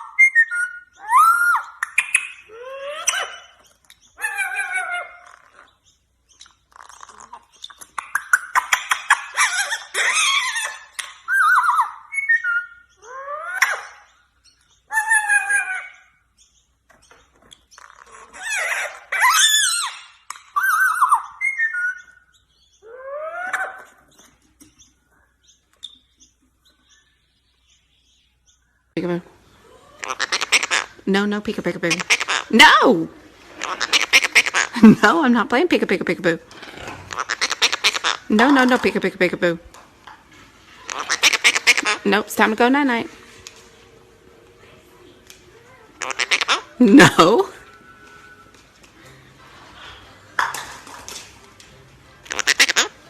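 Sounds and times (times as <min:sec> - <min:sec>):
parrot whistling and warbling: 0:00.0 - 0:03.6, 0:04.2 - 0:05.8, 0:06.4 - 0:14.2, 0:14.9 - 0:16.2, 0:17.7 - 0:24.0, 0:29.6 - 0:31.0, 0:31.7 - 0:34.8, 0:37.1 - 0:38.4, 0:40.8 - 0:42.0, 0:46.0 - 0:48.6, 0:52.3 - 0:53.0
parrot clicks and squawks: 0:33.6 - 0:34.8, 0:36.7 - 0:38.3, 0:40.8 - 0:42.0, 0:46.0 - 0:46.7, 0:52.2 - 0:53.0.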